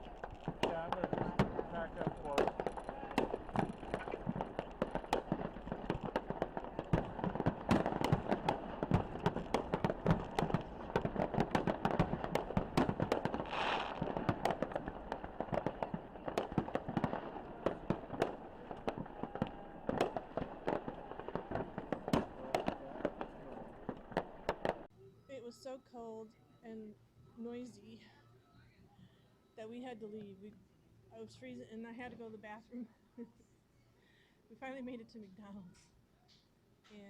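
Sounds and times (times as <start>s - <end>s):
firework hiss: 0.0s - 18.1s
fireworks popping and banging: 0.0s - 24.9s.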